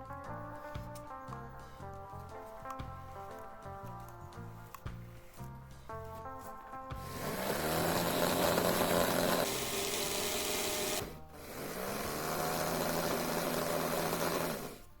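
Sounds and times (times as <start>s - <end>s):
small electric motor whining: 7.0s - 15.0s.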